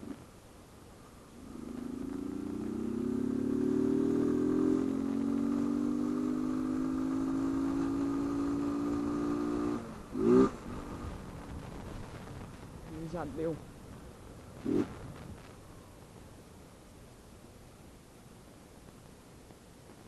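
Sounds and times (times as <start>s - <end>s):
motorcycle engine revving: 1.4s - 12.2s, 14.6s - 15.2s.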